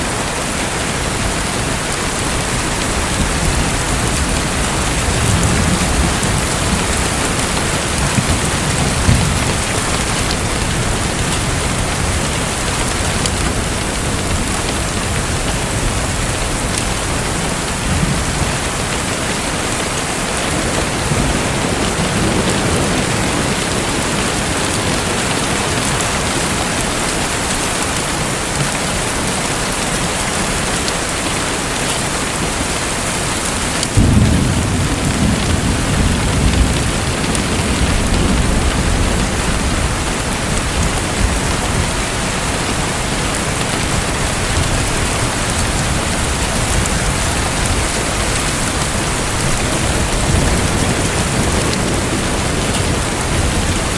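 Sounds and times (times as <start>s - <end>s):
thunder rumbling: 0.0s - 27.6s, 33.6s - 53.9s
heavy rain: 0.0s - 53.9s.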